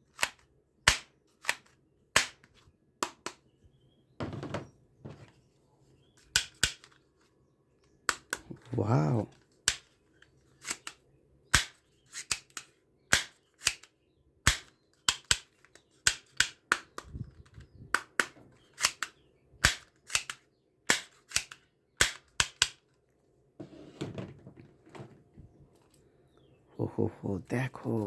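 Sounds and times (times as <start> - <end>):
toy pistol popping shots: 0.9 - 1.6, 2.2 - 3.4, 10.6 - 17.0, 18.0 - 22.8.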